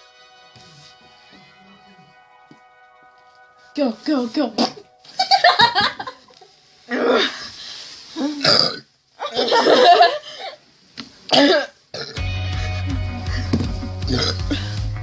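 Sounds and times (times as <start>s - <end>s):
woman belching loudly: 8.4s - 9.7s, 11.3s - 12.2s, 14.1s - 14.4s.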